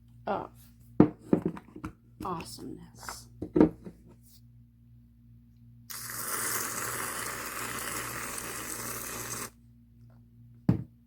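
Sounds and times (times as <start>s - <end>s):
aerosol cream can spraying: 5.9s - 9.5s.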